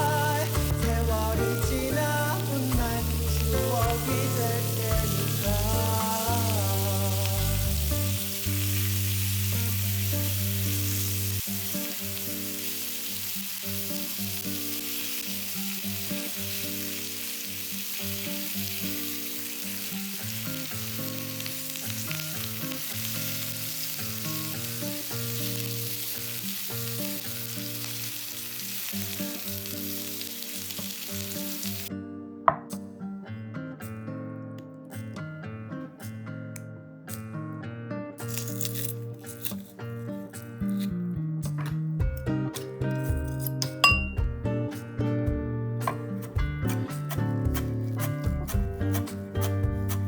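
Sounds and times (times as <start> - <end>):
food sizzling in hot oil: 0.0 - 31.9, 38.2 - 40.9, 45.8 - 50.0.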